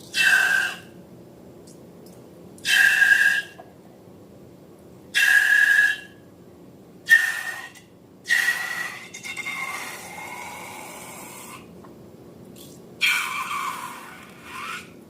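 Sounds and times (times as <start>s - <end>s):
air squealing out of balloon: 13.0s - 15.0s.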